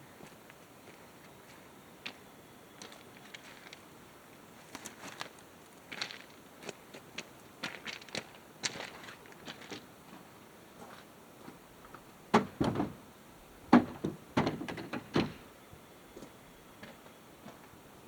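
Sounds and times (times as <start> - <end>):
knocks and thumps: 12.3 - 13.0, 13.7 - 15.4.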